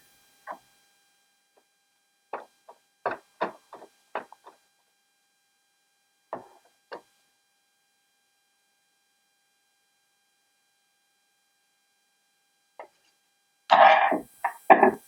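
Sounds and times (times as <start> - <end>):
small sharp clicks and taps: 3.1 - 4.6.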